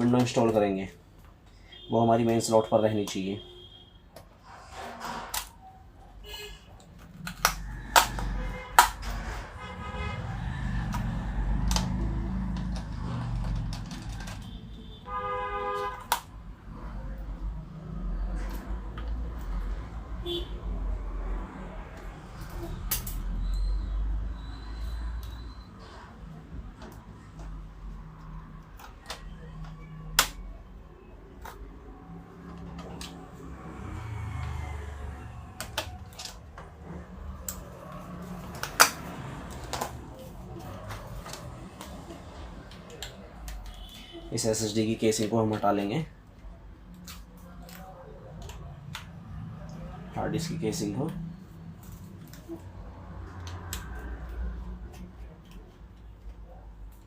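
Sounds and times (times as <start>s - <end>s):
small parts clicking and tapping: 10.8s - 14.7s.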